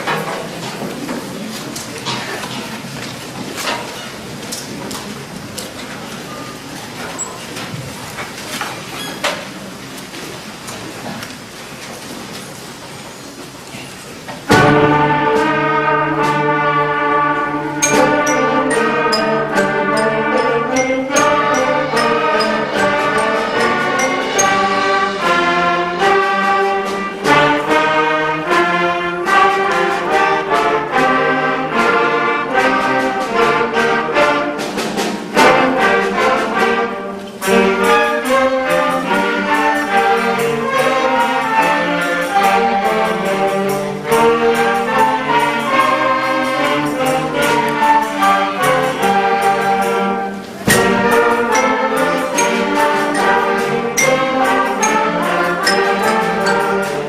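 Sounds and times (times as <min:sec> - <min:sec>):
concert band playing: 0:13.4 - 0:57.0
drum strokes: 0:14.4 - 0:57.0.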